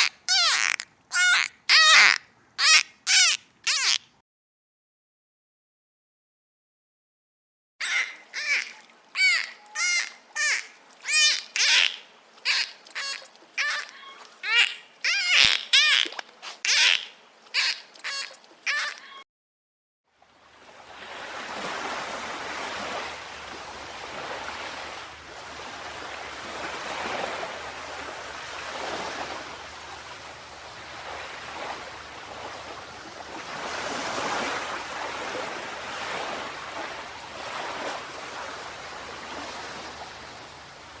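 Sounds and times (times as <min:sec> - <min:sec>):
ocean waves washing ashore: 0:20.2 - 0:41.0.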